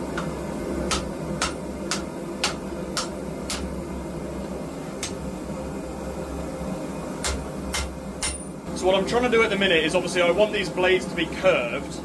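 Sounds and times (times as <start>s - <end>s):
steady low hum: 0.0s - 12.0s
hammer striking steel: 0.9s - 3.7s, 7.2s - 8.6s.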